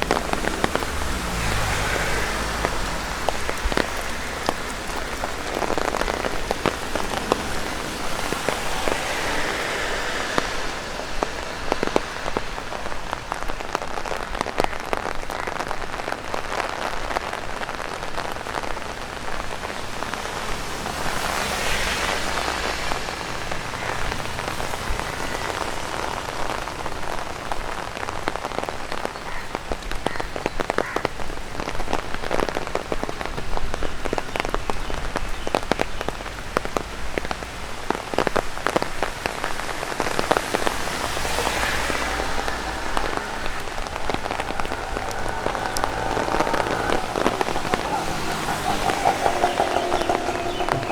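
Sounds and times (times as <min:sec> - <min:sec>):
rain tapping on an umbrella: 0:00.0 - 0:50.9.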